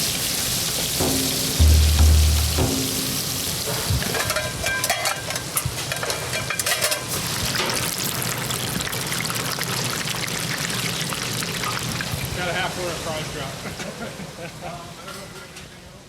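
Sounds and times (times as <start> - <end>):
cooking hiss: 0.0 - 15.0
pans and utensils clattering: 0.1 - 7.8.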